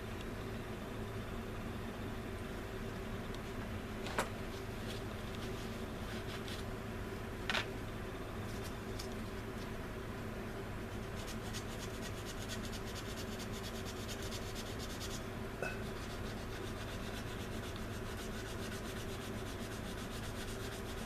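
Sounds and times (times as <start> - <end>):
sanding stick rubbing plastic: 10.9 - 15.2, 15.8 - 21.0.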